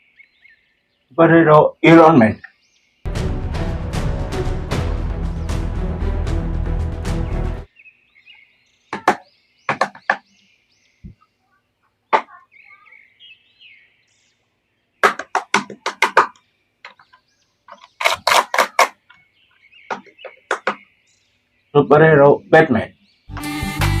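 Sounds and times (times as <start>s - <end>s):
plastic toys clicking: 15.0s - 19.2s.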